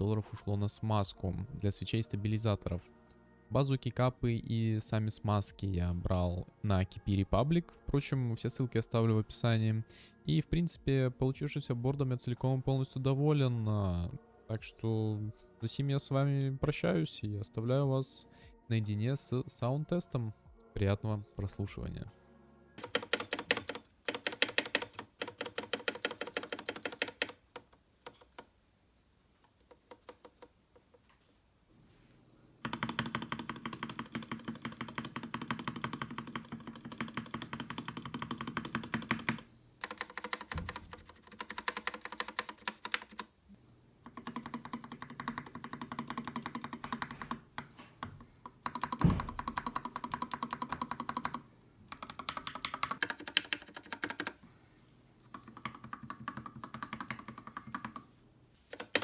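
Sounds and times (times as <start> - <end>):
mechanical keyboard typing: 22.8 - 28.5, 29.6 - 30.5, 32.6 - 43.3, 44.0 - 47.5, 48.5 - 54.4, 55.3 - 58.1, 58.7 - 59.0.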